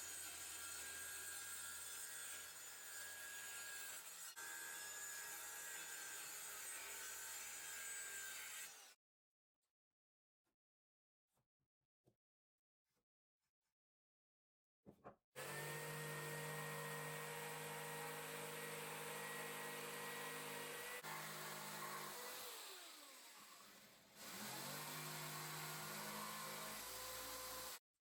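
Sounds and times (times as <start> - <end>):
electric saw motor running: 15.4 - 27.8.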